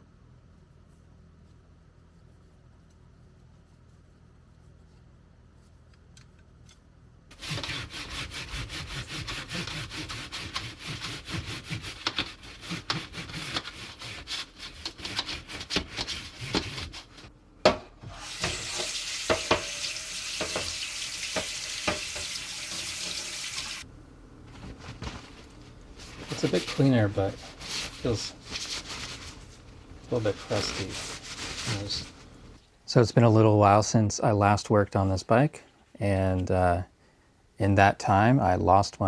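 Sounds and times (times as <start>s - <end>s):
abrasive scrubbing on metal: 7.3s - 17.3s, 18.1s - 23.8s.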